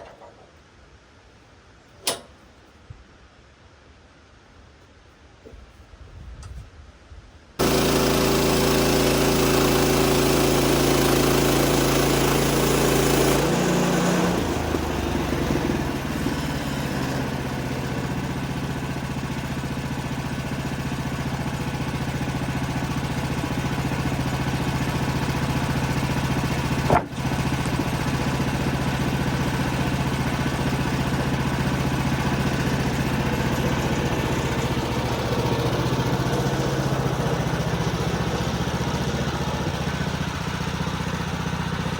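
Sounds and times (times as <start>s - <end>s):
short click: 2.0s - 2.4s
engine running: 7.6s - 41.9s.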